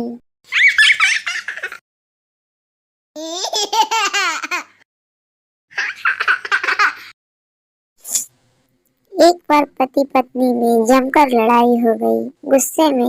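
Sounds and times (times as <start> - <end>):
high-pitched laughter: 0.5 - 1.8.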